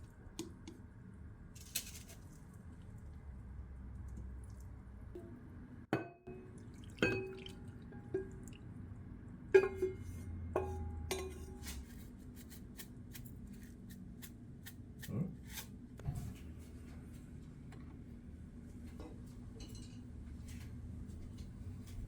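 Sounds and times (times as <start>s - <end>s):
dishes and utensils clinking: 9.6s - 11.8s, 19.0s - 20.1s.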